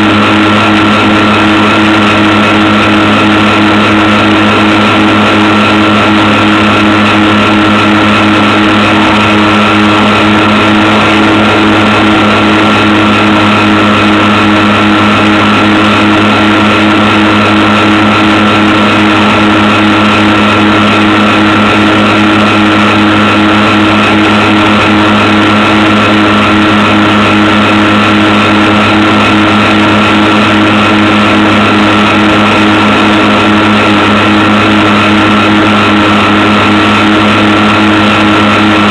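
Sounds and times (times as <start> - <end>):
electric plane motors droning: 0.0 - 38.9.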